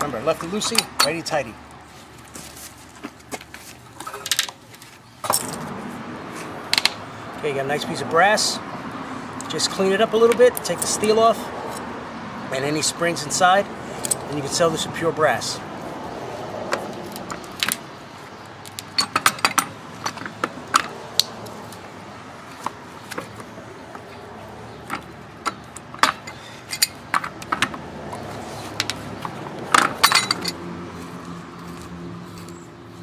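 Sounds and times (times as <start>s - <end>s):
small metal parts clinking: 18.6s - 20.9s, 24.8s - 27.8s, 29.7s - 30.6s.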